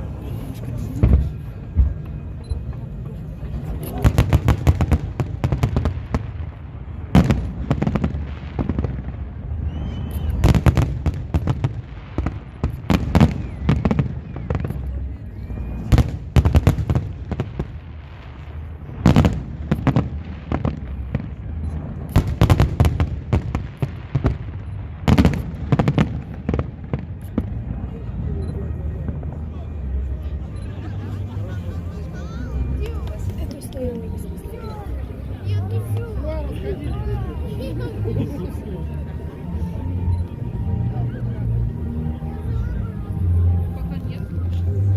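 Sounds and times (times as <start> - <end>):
low rumble: 0.0 - 44.9
fireworks bursting: 3.5 - 29.9
fireworks whistling: 3.8 - 27.6.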